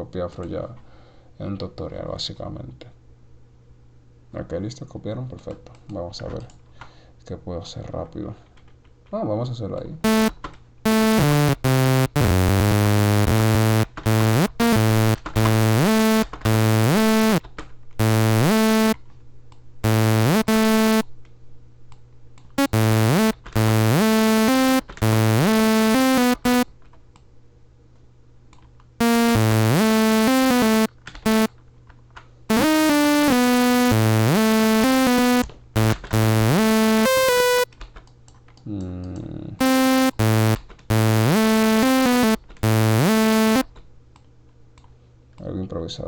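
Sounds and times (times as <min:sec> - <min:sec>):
buzzy synthesizer lead melody: 0:10.0 - 0:10.3, 0:10.9 - 0:17.4, 0:18.0 - 0:19.0, 0:19.8 - 0:21.0, 0:22.6 - 0:26.6, 0:29.0 - 0:31.5, 0:32.5 - 0:37.7, 0:39.6 - 0:43.6.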